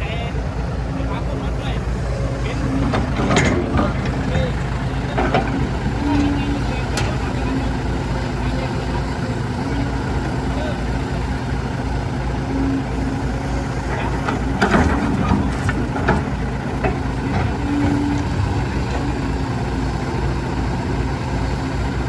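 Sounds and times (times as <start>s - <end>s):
truck engine running: 0.0s - 22.0s
clicks and rattles: 2.8s - 7.4s, 13.9s - 19.0s.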